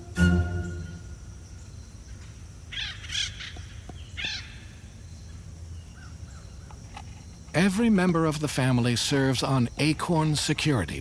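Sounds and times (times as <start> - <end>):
woodpeckers calling: 2.7 - 4.9.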